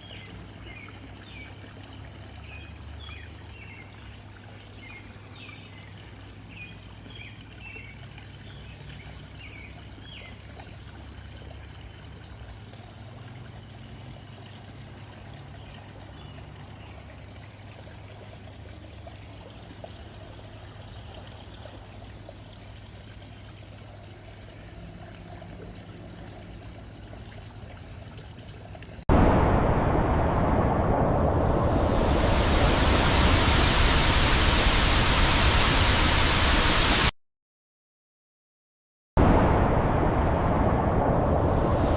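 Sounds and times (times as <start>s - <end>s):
small stream trickling: 0.0s - 29.1s
loud even rushing noise: 29.1s - 37.1s, 39.2s - 41.9s.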